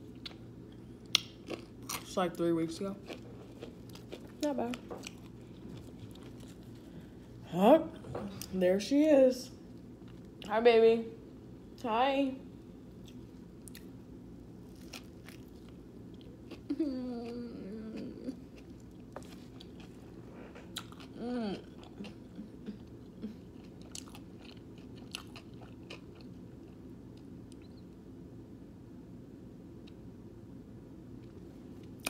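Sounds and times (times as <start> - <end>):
chewing a sandwich: 0.0 - 2.2, 3.0 - 7.4, 14.6 - 27.8.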